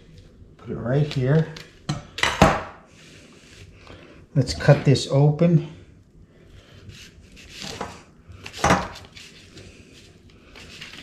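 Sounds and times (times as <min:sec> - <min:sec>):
knife scraping and sawing: 0:06.9 - 0:09.5.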